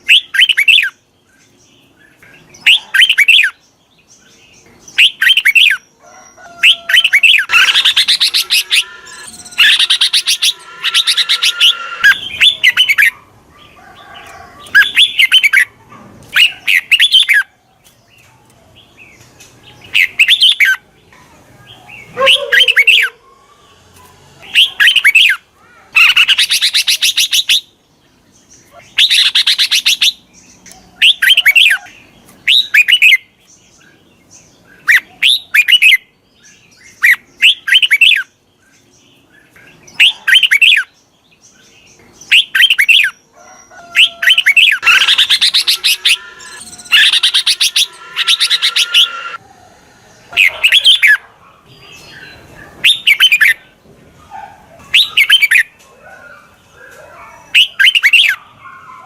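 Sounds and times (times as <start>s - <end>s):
bird chirping and chattering: 0.0s - 1.0s, 1.8s - 3.6s, 4.6s - 5.8s, 6.6s - 13.2s, 14.6s - 18.6s, 24.4s - 25.4s, 28.6s - 33.2s, 44.0s - 49.4s, 54.8s - 55.8s.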